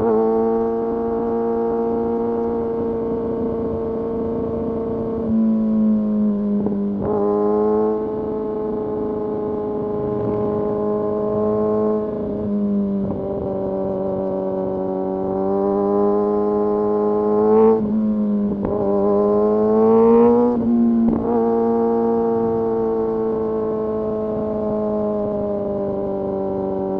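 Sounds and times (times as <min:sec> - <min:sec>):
motorcycle engine revving: 0:06.0 - 0:26.9.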